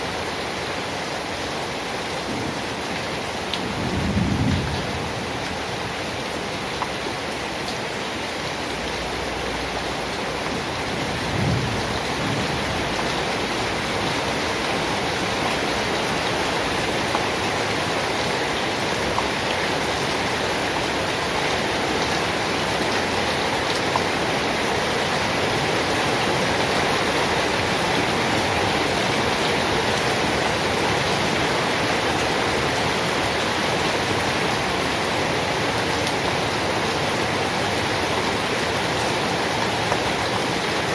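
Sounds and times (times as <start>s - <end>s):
heavy rain: 0.0s - 40.9s
distant thunder rumble: 3.7s - 5.2s.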